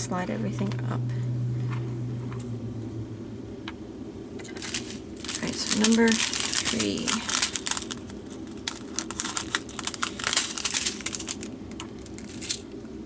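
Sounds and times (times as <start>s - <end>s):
plastic bag crinkling with clicks: 4.4s - 12.8s.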